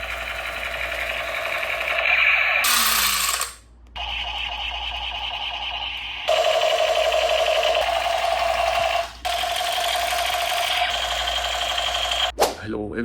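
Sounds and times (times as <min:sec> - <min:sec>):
toy gun buzzing: 0:00.0 - 0:12.3
toy gun hiss: 0:00.3 - 0:05.8.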